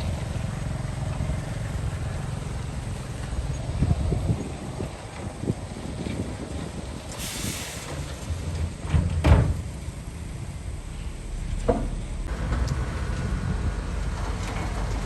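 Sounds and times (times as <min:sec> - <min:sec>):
diesel engine rumble: 0:00.0 - 0:15.0
hiss: 0:06.9 - 0:08.6
machinery knocks and clanks: 0:08.8 - 0:09.7, 0:11.5 - 0:12.9.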